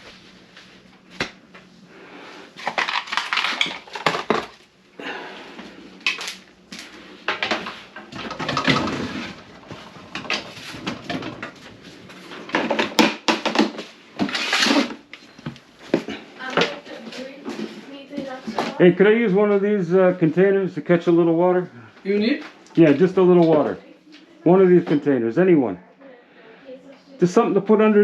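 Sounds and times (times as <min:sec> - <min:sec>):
hard objects clattering: 0:02.5 - 0:04.6, 0:06.0 - 0:18.8.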